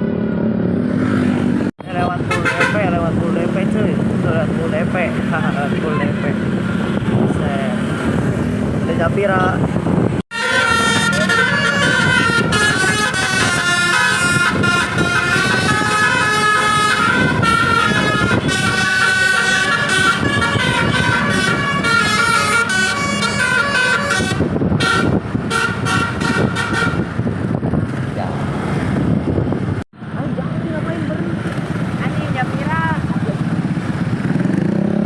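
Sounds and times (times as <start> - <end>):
traffic noise: 0.0 - 35.0
bus air horn playing melody: 2.3 - 2.8, 10.3 - 27.2.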